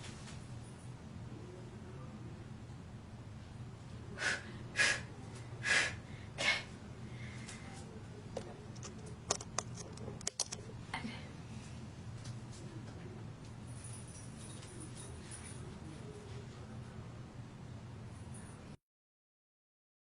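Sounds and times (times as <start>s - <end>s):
person sniffing: 4.2s - 6.7s
small clicks and knocks: 8.4s - 10.6s.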